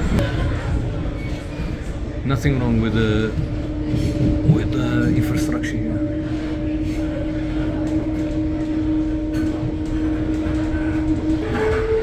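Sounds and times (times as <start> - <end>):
train wheels rumbling on track: 0.0 - 12.0
train motor whine: 1.0 - 12.0.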